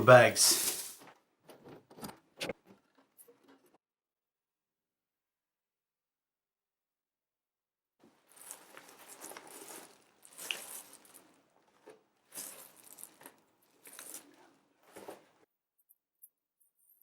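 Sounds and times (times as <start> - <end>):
packaging rustling and crinkling: 0.6 - 1.1, 8.1 - 15.4.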